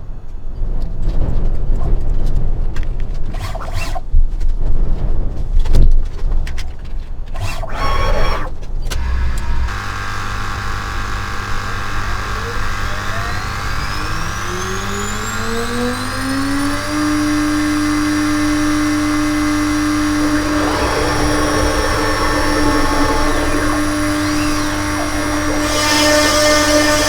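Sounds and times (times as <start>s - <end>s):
rough noisy grinding: 3.3s - 4.0s, 7.3s - 27.0s
spindle motor whine: 7.4s - 27.0s.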